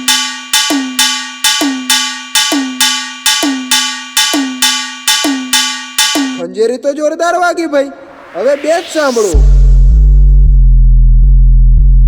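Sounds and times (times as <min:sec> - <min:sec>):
metallic percussion strikes: 0:00.0 - 0:06.4
deep falling percussion tone: 0:07.9 - 0:12.0.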